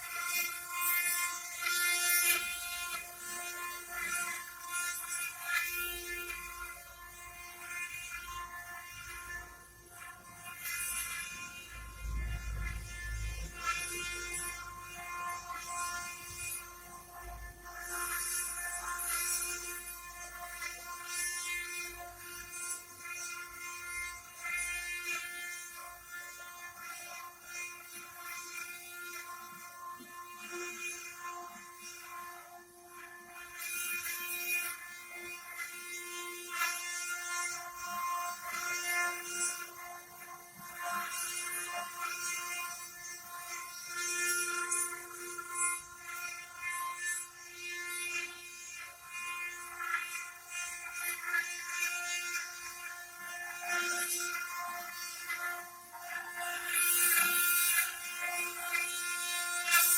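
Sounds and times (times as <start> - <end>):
spindle motor whine: 0.0 - 59.9
bit cutting stone hiss: 40.4 - 59.9.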